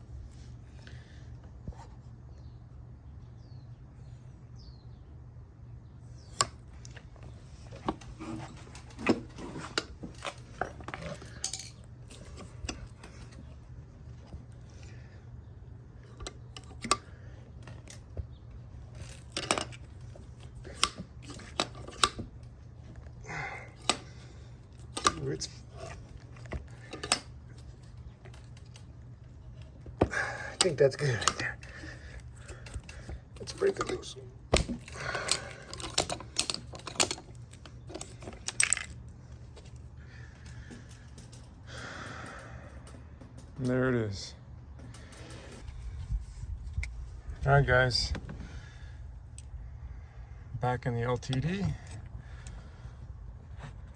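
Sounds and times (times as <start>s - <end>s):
low steady hum: 0.0s - 53.9s
metal clicks and clinks: 9.8s - 12.9s, 32.4s - 39.1s.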